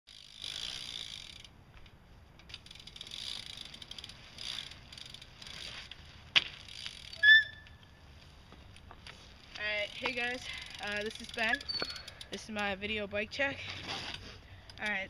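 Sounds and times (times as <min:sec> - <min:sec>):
high squeak: 0:07.2 - 0:07.8.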